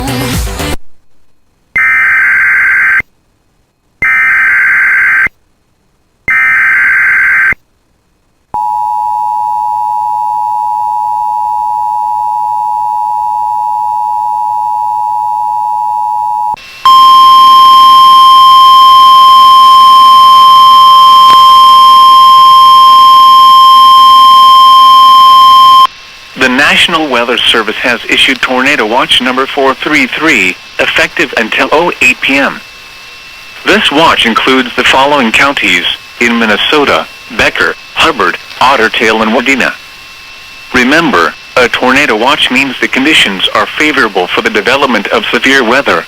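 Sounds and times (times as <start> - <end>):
two-tone attention signal: 8.6 - 25.9.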